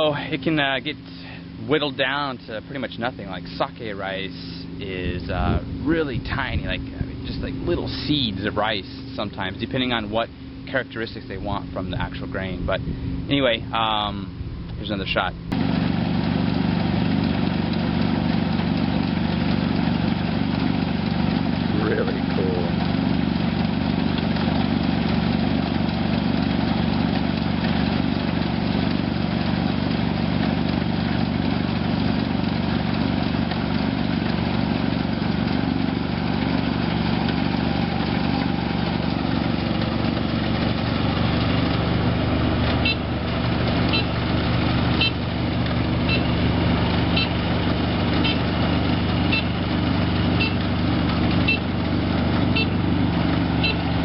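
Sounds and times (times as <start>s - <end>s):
combine harvester engine running: 0.0s - 54.0s
short high beeps: 45.0s - 45.2s, 46.1s - 46.3s, 47.1s - 47.4s, 50.4s - 50.6s.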